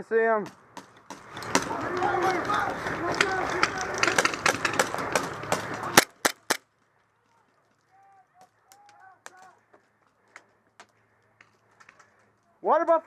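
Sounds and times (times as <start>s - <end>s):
distant calls: 0.5s - 12.6s
airsoft guns firing: 0.6s - 6.6s.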